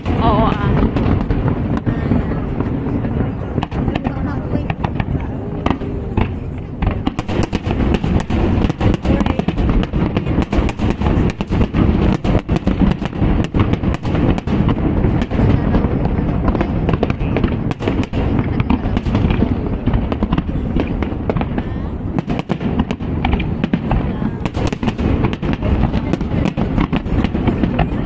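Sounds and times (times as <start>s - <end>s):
fireworks bangs: 0.0s - 28.0s
fireworks crackling: 0.0s - 28.0s
low rumble: 0.0s - 28.0s.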